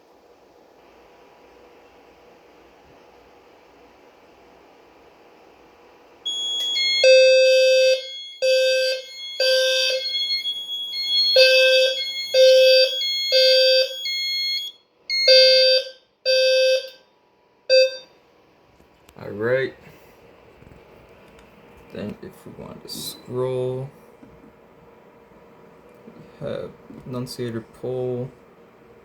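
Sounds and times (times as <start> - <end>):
fire alarm pulsing: 6.2 - 17.0, 17.7 - 18.1
high steady alarm tone: 6.3 - 17.0, 17.7 - 18.1.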